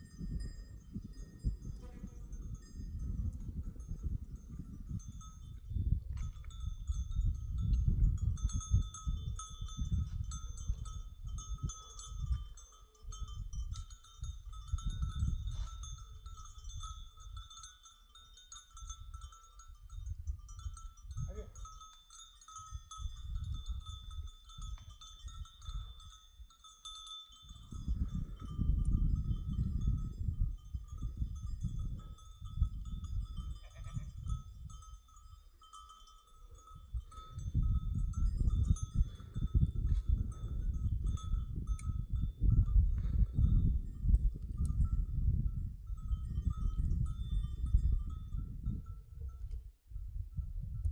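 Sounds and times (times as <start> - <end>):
low gusting rumble: 0.0 - 12.5, 27.5 - 34.9, 36.5 - 50.9
animal bells clinking: 0.0 - 50.8.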